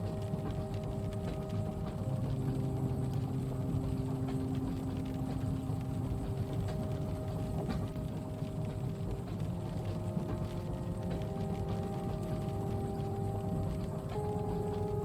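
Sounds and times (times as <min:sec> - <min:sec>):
faint steady hum: 0:00.0 - 0:15.0
low rumble of moving train: 0:00.0 - 0:15.0
rain tapping on window: 0:00.0 - 0:15.0.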